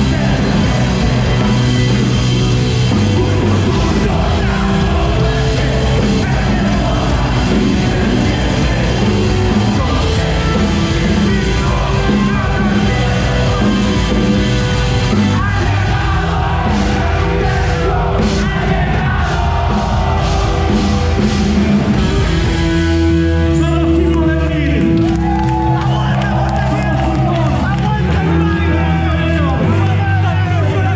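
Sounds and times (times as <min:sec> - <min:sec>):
person singing and shouting: 0:00.0 - 0:21.3
rock band playing live: 0:00.0 - 0:30.9.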